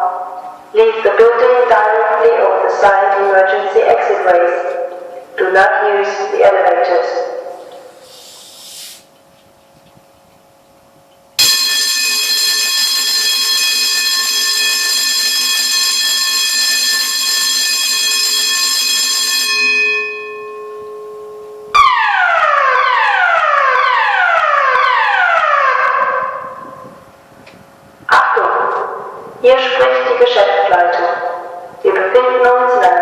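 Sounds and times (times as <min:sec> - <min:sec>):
falling alarm sweeps: 0:11.4 - 0:27.0
steady electronic alarm tone: 0:11.4 - 0:27.1.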